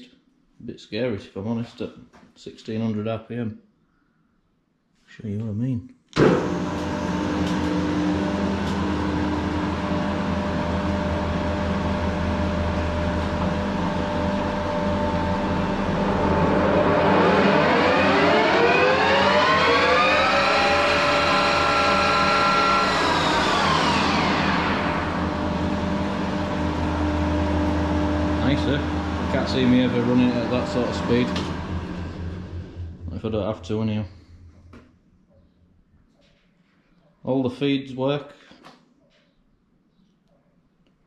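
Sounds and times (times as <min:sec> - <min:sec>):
metal lathe motor and gear hum: 0:06.2 - 0:33.1
lathe headstock whine: 0:06.2 - 0:33.6.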